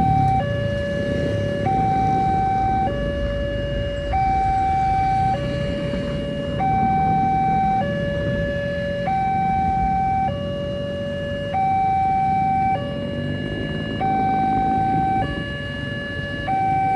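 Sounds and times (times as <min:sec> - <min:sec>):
two-tone warning siren: 0:00.0 - 0:16.9.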